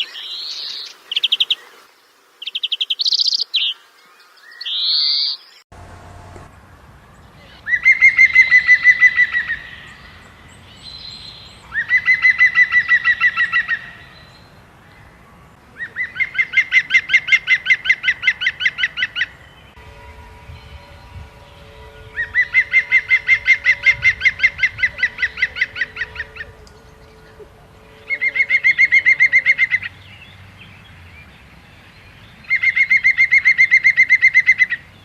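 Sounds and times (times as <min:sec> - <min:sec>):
bird trilling: 0:20.6 - 0:30.0.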